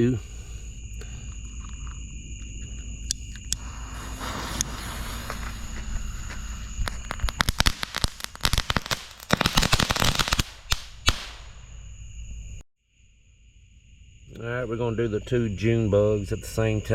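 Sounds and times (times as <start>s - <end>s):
sharp firework pops: 3.1s - 11.8s
firework fizzing hiss: 3.4s - 11.7s
firework crackles: 3.5s - 11.8s.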